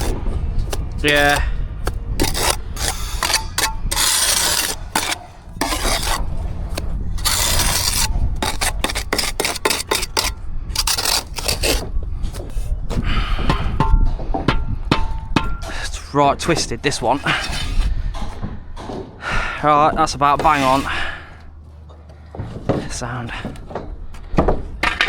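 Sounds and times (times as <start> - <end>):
trowel scraping mortar: 0.0 - 13.8, 15.6 - 18.3, 20.0 - 21.6.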